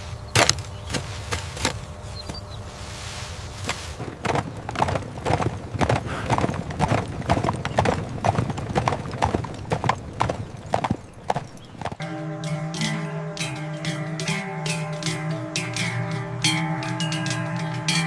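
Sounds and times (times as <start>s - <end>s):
hard clopping knocks: 3.7s - 18.0s
guitar music: 12.0s - 18.0s.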